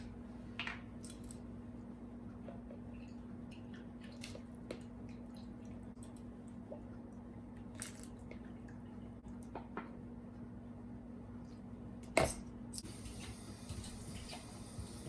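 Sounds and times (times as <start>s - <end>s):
soft wet squishes: 2.2s - 9.6s.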